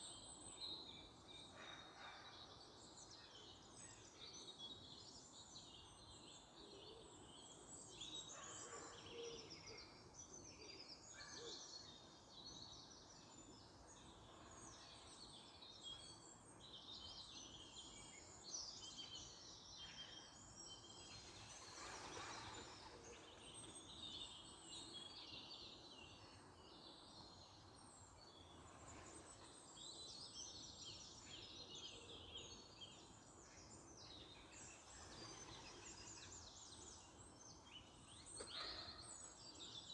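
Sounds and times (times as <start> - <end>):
low background hiss: 9.4 - 39.9.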